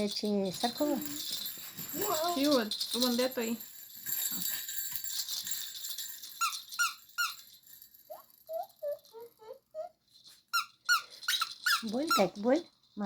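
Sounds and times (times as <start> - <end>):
jingle-bell rattle: 0.0 - 13.0
squeaky toy squeaking: 6.4 - 7.5, 8.1 - 12.4.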